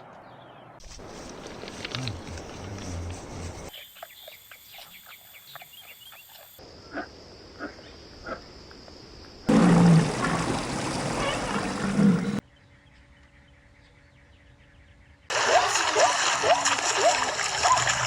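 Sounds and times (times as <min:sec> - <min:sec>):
animal calls: 0:09.5 - 0:12.4.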